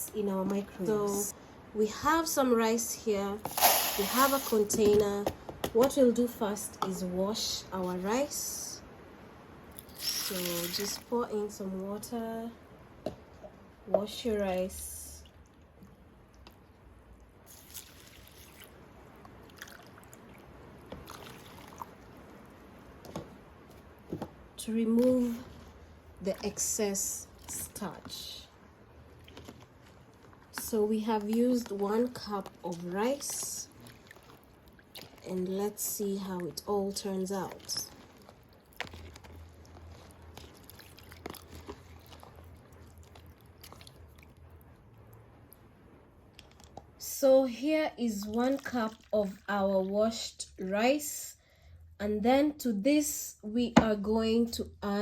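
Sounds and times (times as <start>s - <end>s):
low steady hum: 0.0s - 55.0s
water swishing and sloshing: 9.6s - 11.8s, 14.0s - 50.5s
small splashes: 9.7s - 11.2s, 17.5s - 22.3s, 29.2s - 44.3s, 48.2s - 49.5s
rice container clicks and crunches: 37.8s - 42.4s.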